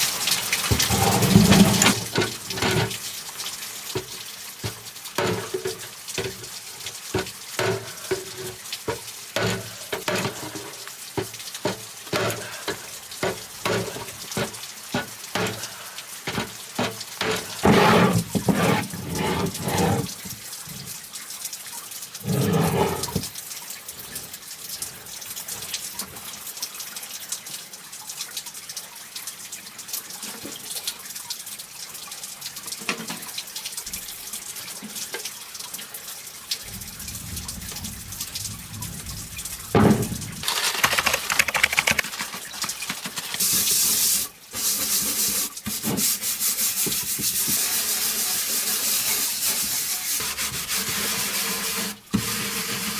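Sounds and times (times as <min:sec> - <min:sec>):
water sounds: 0:00.0 - 0:26.3, 0:36.4 - 0:50.7
scrubbing metal box: 0:00.7 - 0:02.9, 0:17.2 - 0:20.2, 0:22.2 - 0:23.3, 0:39.8 - 0:48.1.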